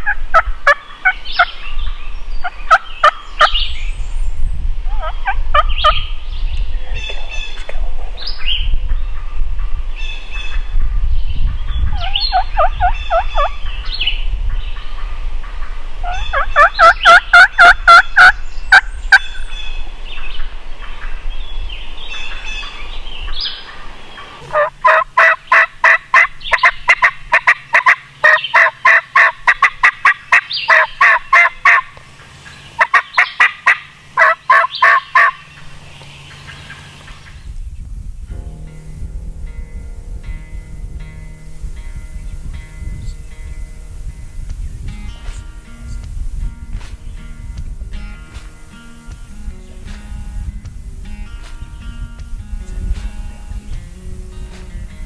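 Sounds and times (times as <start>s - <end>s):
small birds chirping: 0.7s - 9.4s, 10.0s - 24.7s, 25.4s - 38.4s
turkey yelping: 4.9s - 6.0s, 11.9s - 13.5s, 16.0s - 19.3s, 23.7s - 31.9s, 32.5s - 35.6s.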